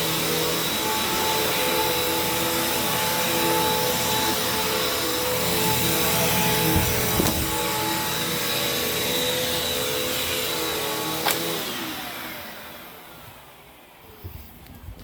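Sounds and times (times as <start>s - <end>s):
vacuum cleaner running: 0.0s - 14.8s.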